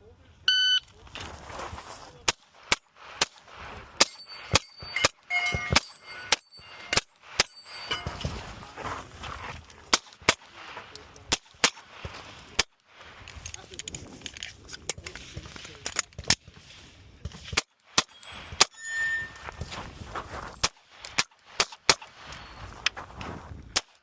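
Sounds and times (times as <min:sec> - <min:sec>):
metallic ring: 0:03.9 - 0:09.4, 0:18.0 - 0:20.5
pistol shots: 0:11.3 - 0:12.7.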